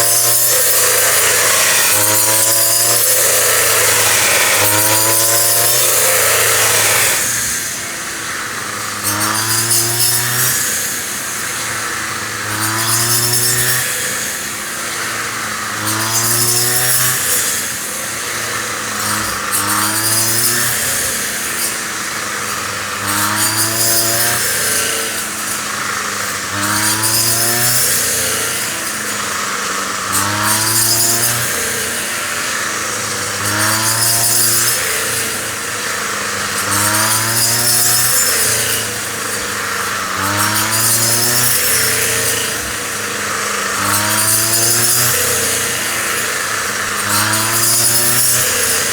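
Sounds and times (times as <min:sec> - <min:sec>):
small motor cycling pitch: 0:00.0 - 0:07.9.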